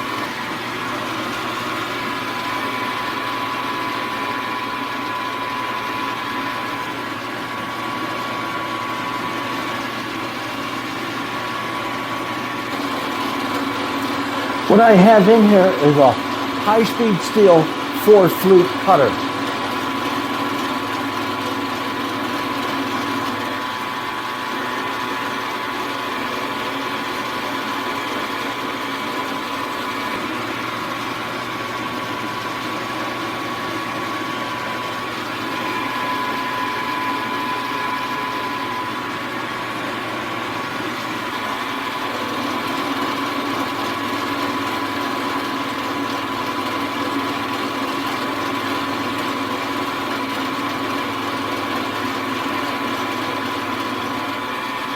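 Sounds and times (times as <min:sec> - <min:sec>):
milling machine hum and whine: 0:00.0 - 0:54.9.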